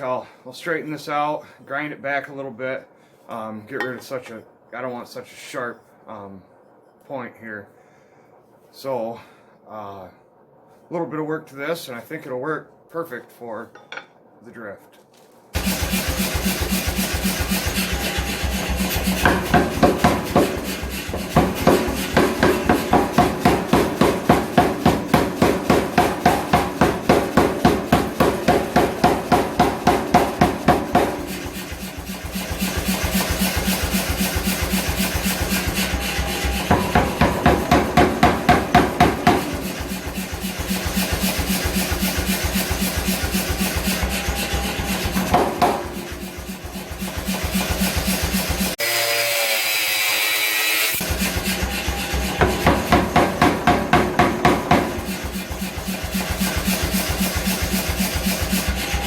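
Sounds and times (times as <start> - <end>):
hammer striking steel on anvil: 15.6 - 48.8, 51.0 - 59.0
steady machine noise: 15.6 - 59.0.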